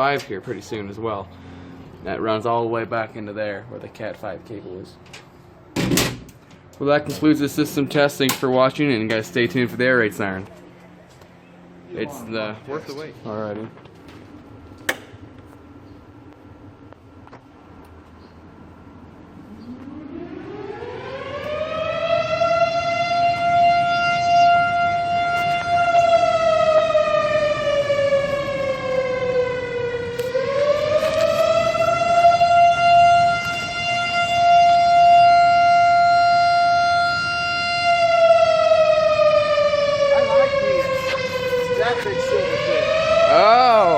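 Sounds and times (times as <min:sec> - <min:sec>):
air raid siren wailing: 0:18.6 - 0:43.9.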